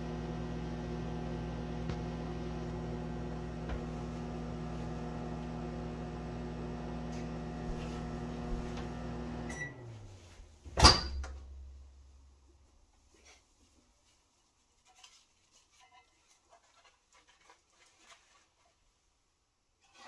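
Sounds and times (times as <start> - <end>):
microwave oven humming: 0.0 - 10.2.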